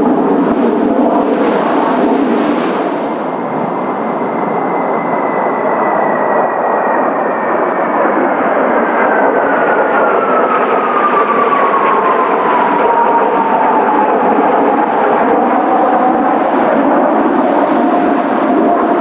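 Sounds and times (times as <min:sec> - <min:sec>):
jet aircraft roaring past: 0:00.0 - 0:19.0.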